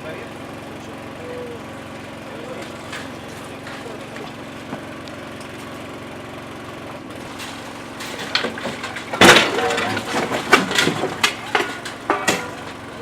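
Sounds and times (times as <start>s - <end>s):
engine running: 0.0s - 13.0s
clattering impacts: 7.2s - 13.0s.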